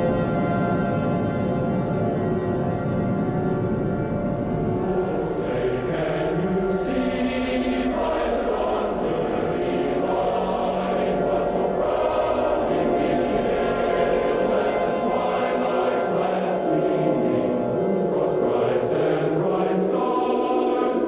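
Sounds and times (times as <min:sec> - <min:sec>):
choir singing anthem: 0:04.8 - 0:21.0.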